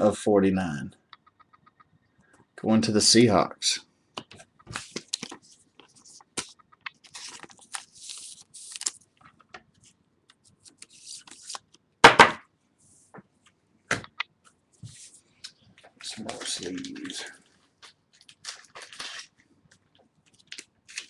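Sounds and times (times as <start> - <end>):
plastic sleeves rustling: 4.2 - 11.8, 14.8 - 21.0.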